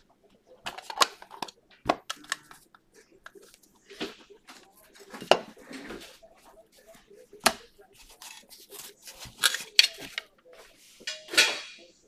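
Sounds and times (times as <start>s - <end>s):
foil wrappers crinkling: 7.9s - 10.3s.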